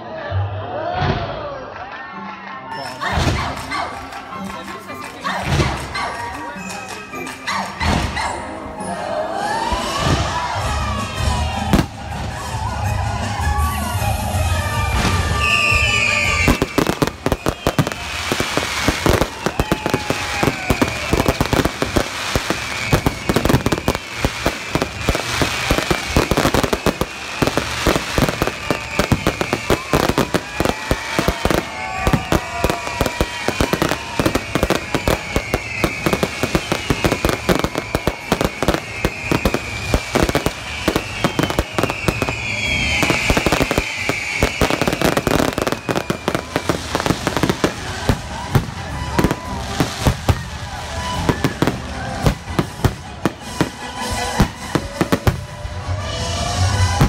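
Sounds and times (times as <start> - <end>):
fireworks bangs and crackling: 3.1 - 8.6, 9.6 - 57.0
high wavering whistles: 14.8 - 47.8.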